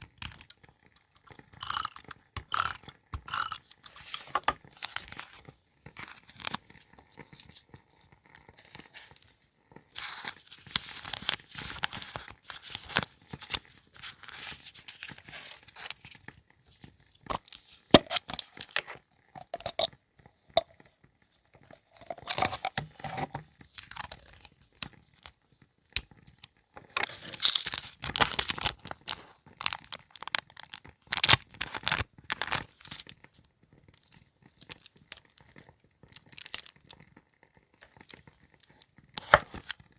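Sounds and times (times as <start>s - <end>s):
paper rustling and crinkling: 3.6s - 9.3s, 9.9s - 19.0s, 37.9s - 39.9s.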